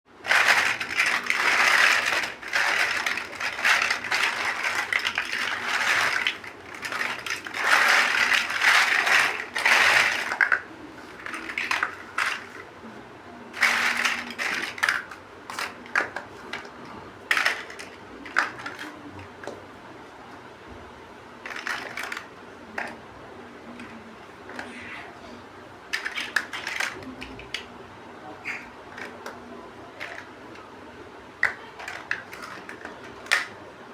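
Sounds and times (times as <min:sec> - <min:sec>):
plastic bricks clattering: 0:00.2 - 0:12.7, 0:13.6 - 0:19.2, 0:21.4 - 0:23.0, 0:25.9 - 0:27.7, 0:28.4 - 0:30.7, 0:31.4 - 0:33.6.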